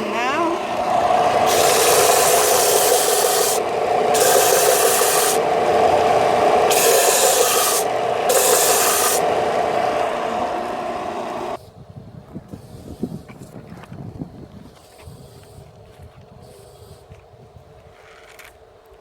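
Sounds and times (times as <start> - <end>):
sander rasping on wood: 0.0 - 11.6.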